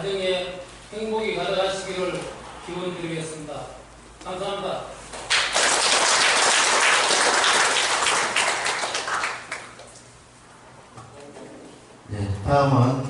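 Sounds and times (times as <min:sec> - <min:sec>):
audience applauding: 0:05.3 - 0:10.0.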